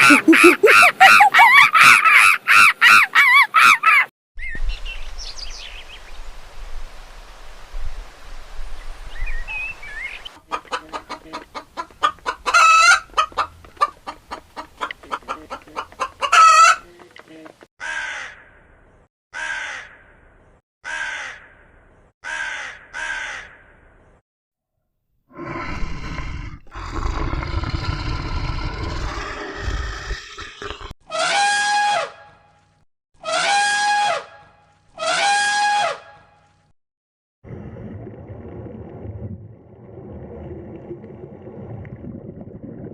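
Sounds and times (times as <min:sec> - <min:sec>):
chickens clucking: 0:10.4 - 0:17.4.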